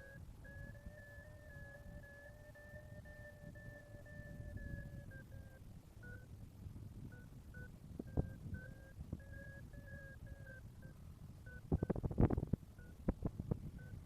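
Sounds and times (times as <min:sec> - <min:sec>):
variometer electronic beeps: 0:00.0 - 0:06.4, 0:07.1 - 0:14.0.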